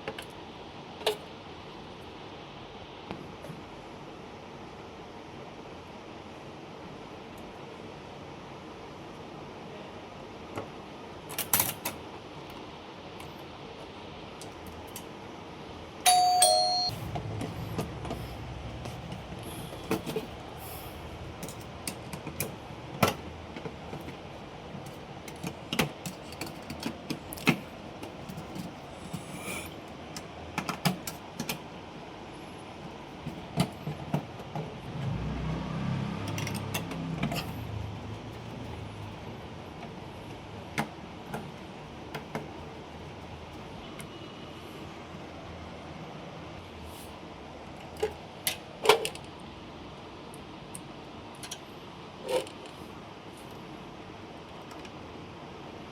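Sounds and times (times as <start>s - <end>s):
two-note electronic chime: 16.1s - 17.0s
low rumbling handling noise: 16.5s - 24.1s.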